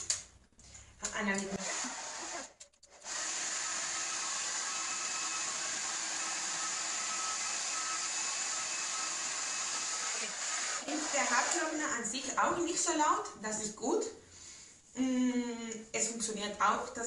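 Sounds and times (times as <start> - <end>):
hair dryer blowing: 1.6 - 11.8.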